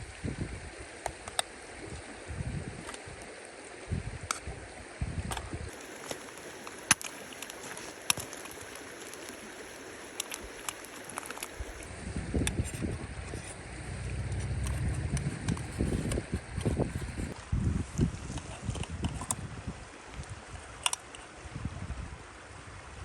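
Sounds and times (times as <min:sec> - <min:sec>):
steady hiss: 0:05.6 - 0:11.9
sharp pops: 0:05.7 - 0:11.9
wood fire crackling: 0:05.7 - 0:11.9
low thuds: 0:13.2 - 0:17.4.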